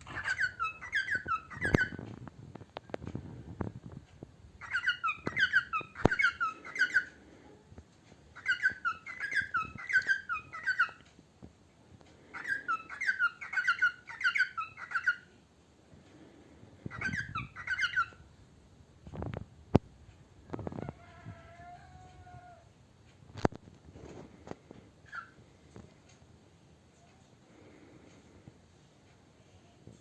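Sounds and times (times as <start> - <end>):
cockatiel chirping: 0.0 - 2.0, 4.6 - 7.1, 8.3 - 11.0, 12.3 - 15.3, 16.9 - 18.2, 25.0 - 25.4.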